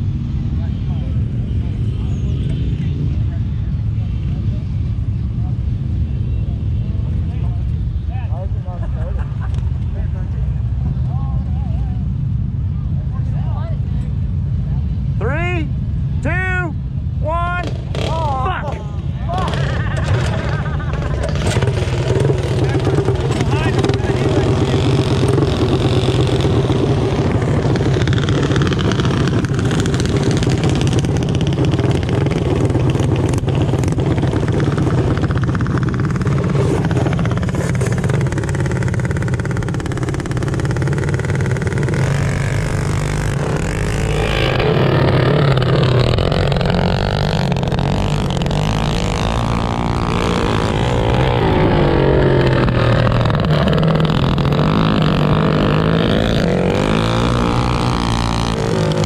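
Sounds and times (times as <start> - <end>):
low engine hum: 16.8 - 59.0
mini bike engines revving: 17.3 - 59.0.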